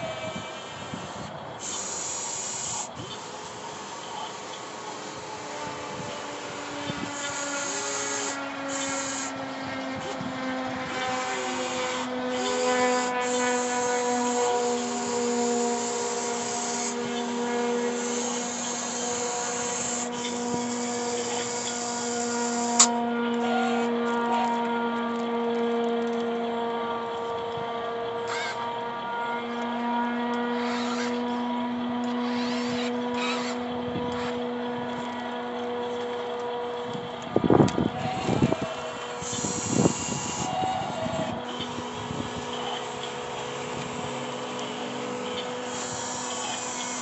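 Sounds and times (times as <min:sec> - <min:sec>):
model excavator motor whining: 0:00.0 - 0:47.0.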